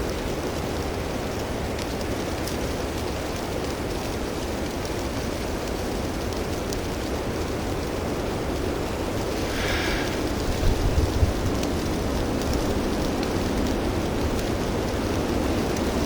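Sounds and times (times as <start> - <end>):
blizzard wind hissing: 8.4 - 14.2
wind buffeting microphone: 8.8 - 15.0.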